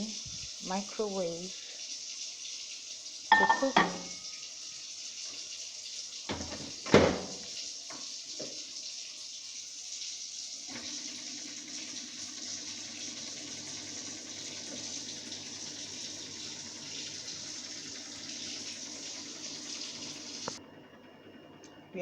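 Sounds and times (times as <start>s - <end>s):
steady hiss: 0.0s - 10.0s
microwave oven humming: 2.8s - 8.9s, 10.6s - 22.0s.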